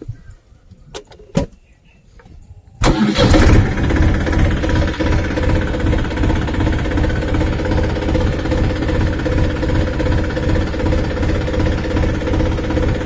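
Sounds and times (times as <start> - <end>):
tractor engine starting and running: 2.8 - 13.0.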